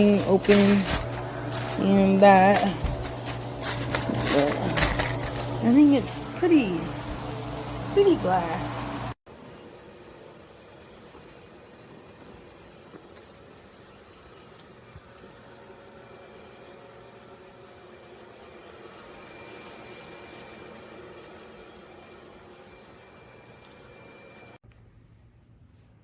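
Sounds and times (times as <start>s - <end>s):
gas fireplace flames hissing: 0.0s - 24.6s.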